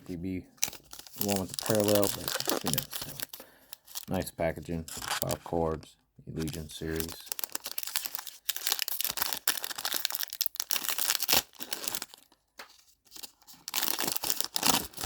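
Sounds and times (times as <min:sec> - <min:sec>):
wrapper tearing and crinkling: 0:00.6 - 0:04.2, 0:06.4 - 0:12.4, 0:13.1 - 0:15.0.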